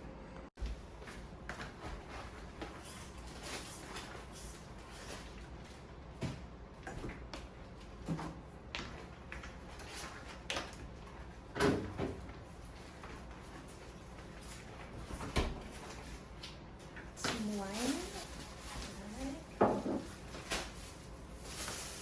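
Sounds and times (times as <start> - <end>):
containers knocking on fridge shelves: 19.6 - 20.2.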